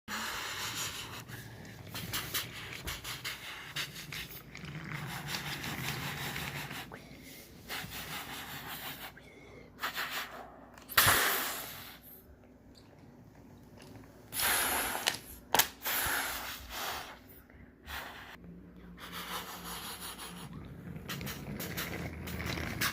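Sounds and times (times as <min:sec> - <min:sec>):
person making hissing mouth noises: 0:06.5 - 0:12.2, 0:14.3 - 0:18.4.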